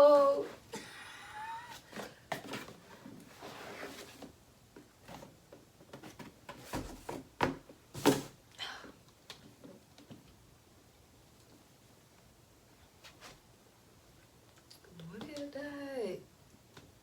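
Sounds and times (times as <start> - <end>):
cardboard rustling: 1.7 - 8.4.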